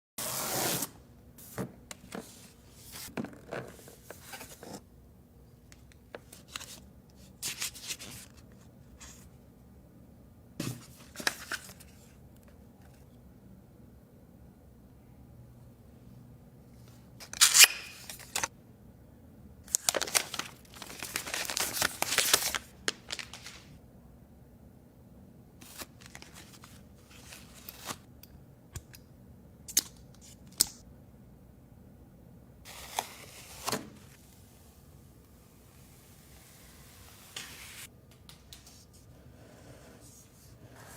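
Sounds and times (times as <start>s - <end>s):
packaging tearing and rustling: 19.7s - 23.7s.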